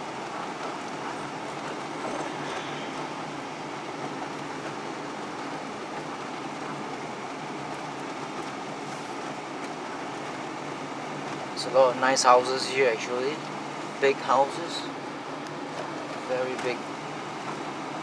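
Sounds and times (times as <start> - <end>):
car road noise from inside: 0.0 - 18.0.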